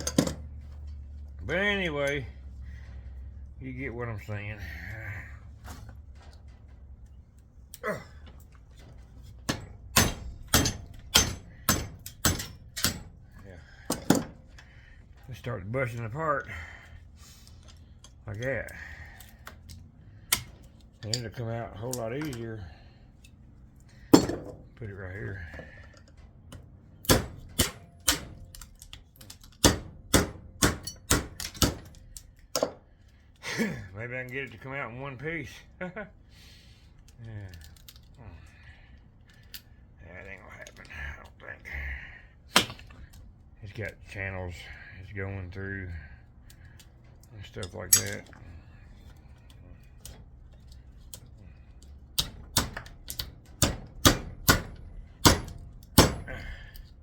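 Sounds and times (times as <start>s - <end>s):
hammer striking a chisel: 9.5s - 13.1s, 27.0s - 28.4s, 29.6s - 32.8s, 42.5s - 42.9s, 52.2s - 56.4s.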